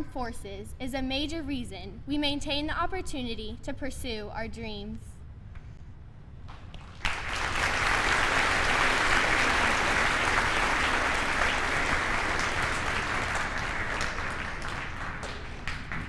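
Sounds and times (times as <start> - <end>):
audience applauding: 6.7 - 16.0.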